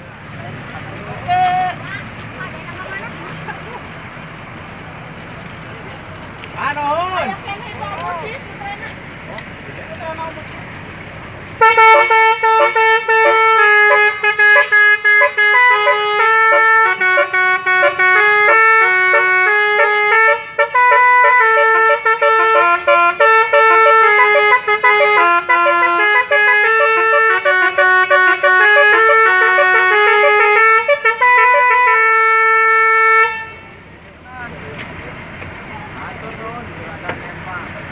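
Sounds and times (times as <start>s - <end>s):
musical bus air horn melody: 11.6s - 33.8s.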